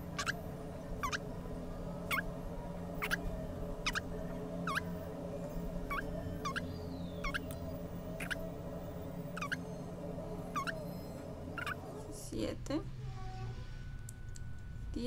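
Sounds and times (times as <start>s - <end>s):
bird chirping: 0.0s - 0.4s, 1.0s - 1.2s, 3.0s - 5.0s, 5.8s - 11.8s
low background hum: 0.0s - 15.0s.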